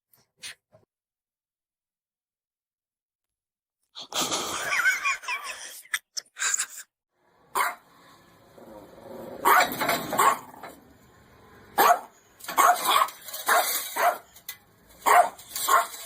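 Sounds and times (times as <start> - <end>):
dog barking: 7.5 - 7.8, 9.4 - 10.6, 11.8 - 14.3, 15.0 - 16.0.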